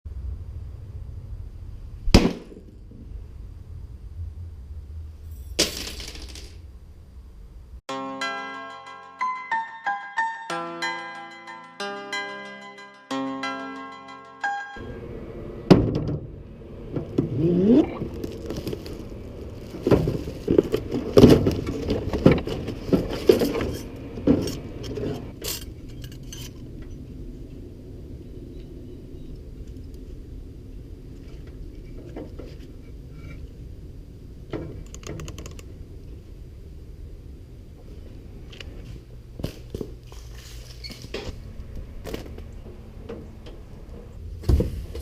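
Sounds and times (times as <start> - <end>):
steady low hum: 0.1 - 7.8, 35.6 - 45.0.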